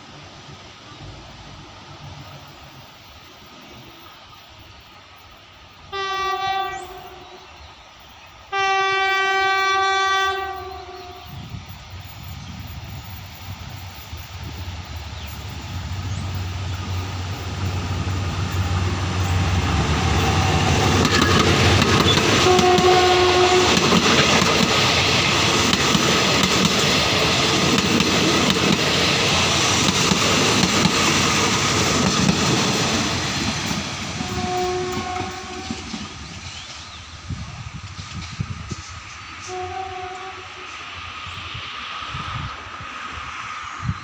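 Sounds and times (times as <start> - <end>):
diesel locomotive engine hum: 0.0 - 44.0
train horn blasts: 5.8 - 7.6, 8.5 - 11.6, 18.1 - 24.1, 34.2 - 36.0, 39.4 - 40.8
train wheels rumbling on rails: 9.1 - 44.0.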